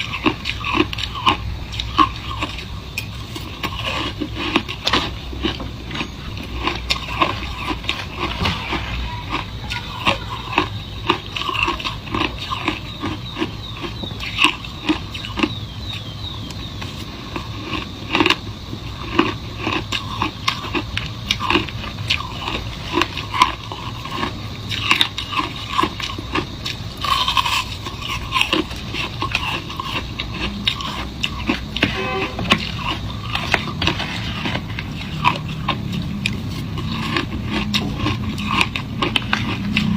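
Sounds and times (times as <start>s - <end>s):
ice crunching being chewed: 0.0s - 39.9s
scraping: 30.7s - 39.9s.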